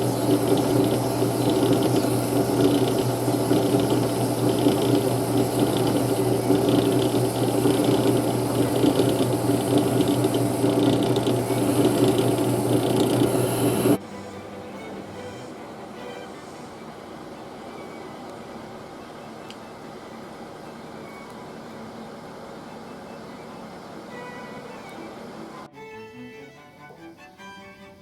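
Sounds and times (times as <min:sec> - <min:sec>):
metal lathe rattling: 0:00.0 - 0:14.0.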